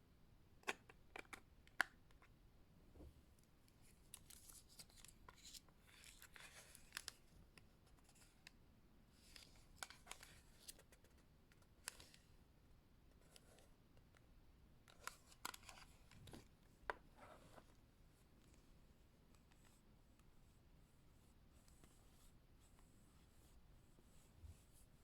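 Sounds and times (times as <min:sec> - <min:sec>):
soft scratchy rubbing: 0:20.5 - 0:25.0.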